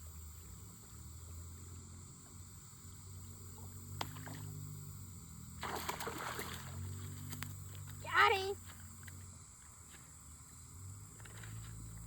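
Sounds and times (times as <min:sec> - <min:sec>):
fish splashing at water surface: 0:05.6 - 0:07.1.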